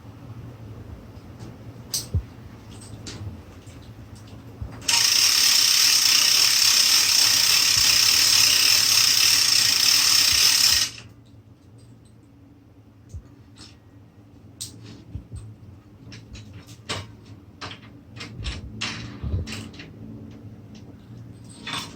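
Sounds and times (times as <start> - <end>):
winch ratcheting clatter: 4.8 - 11.0.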